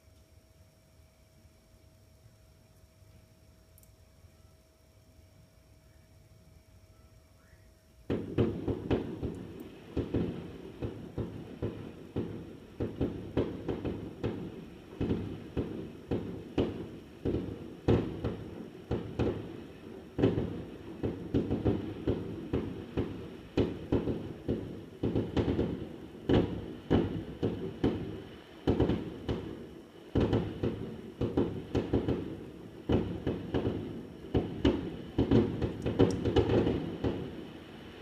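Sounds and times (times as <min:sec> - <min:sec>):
fireworks bangs: 0:08.1 - 0:38.0.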